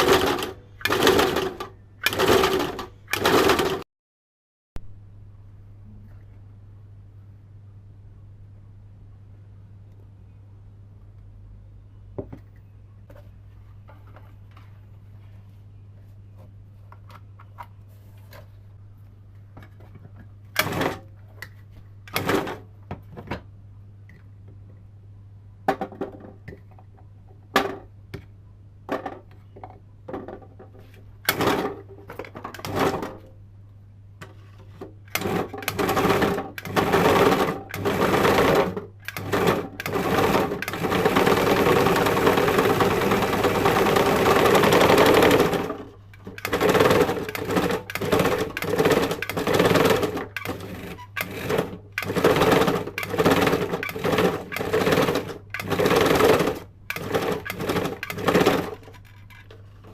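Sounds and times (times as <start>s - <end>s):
sewing machine motor running: 0.0s - 3.8s, 35.1s - 45.8s, 46.4s - 58.8s.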